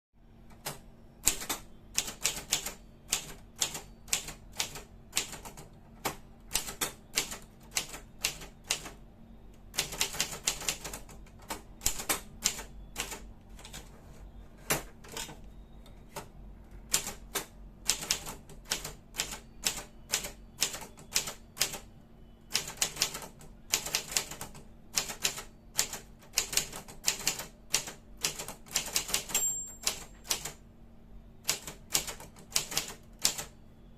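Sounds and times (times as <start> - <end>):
faint steady hum: 0.2 - 33.9
typewriter bell ringing: 28.9 - 30.5.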